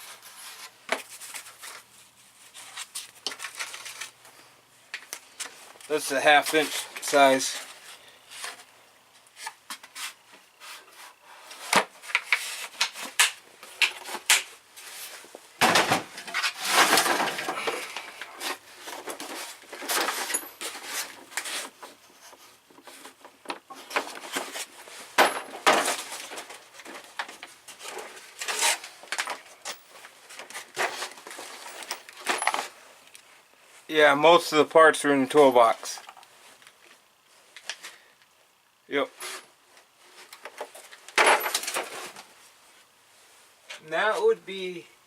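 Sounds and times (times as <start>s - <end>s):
tools rummaged in a tool box: 2.5s - 4.2s, 14.8s - 22.0s, 22.8s - 32.8s, 40.2s - 42.3s.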